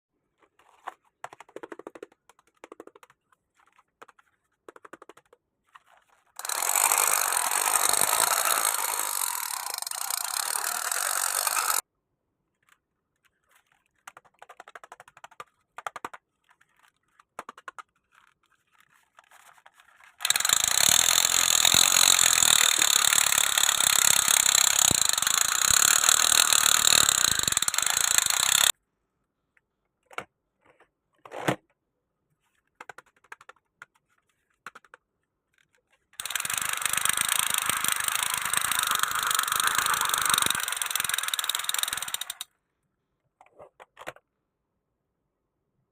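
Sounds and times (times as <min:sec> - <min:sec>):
plastic toy clicks: 0:01.2 - 0:11.8, 0:12.6 - 0:28.7, 0:32.8 - 0:42.6
toy machine gun firing: 0:06.4 - 0:11.8, 0:20.2 - 0:28.7, 0:36.2 - 0:42.5.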